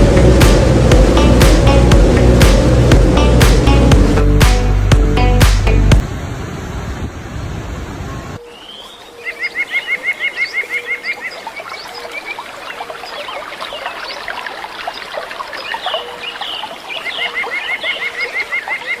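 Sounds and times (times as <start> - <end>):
birds chirping: 8.4 - 19.0.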